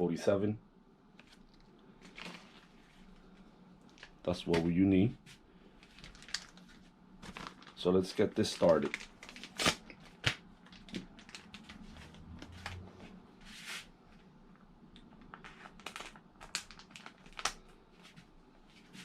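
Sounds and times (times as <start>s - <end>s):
rustling of parts: 1.2s - 13.6s.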